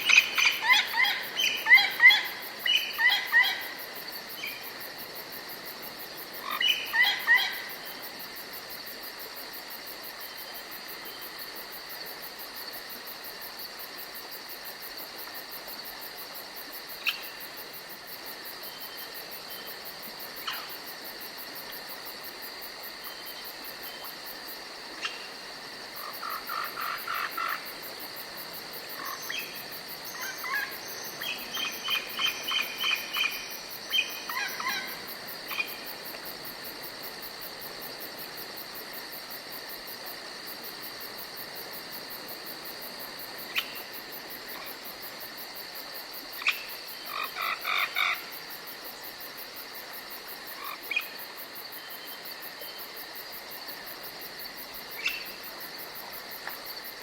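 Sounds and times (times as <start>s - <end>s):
rapid repeated chirping calls: 30.2s - 34.9s.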